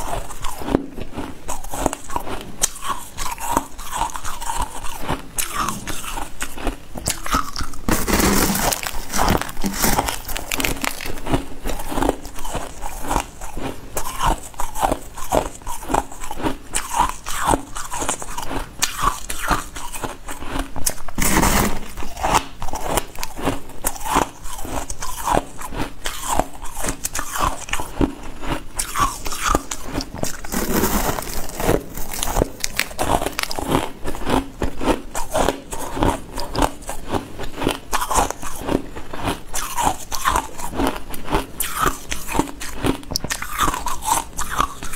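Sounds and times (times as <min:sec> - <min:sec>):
person chewing ice crunching: 0:00.0 - 0:44.9.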